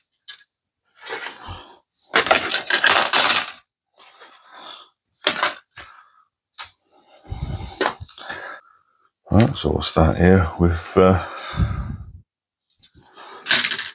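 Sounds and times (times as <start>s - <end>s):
plastic parts clattering: 2.0s - 3.6s, 5.2s - 5.8s, 13.4s - 13.9s.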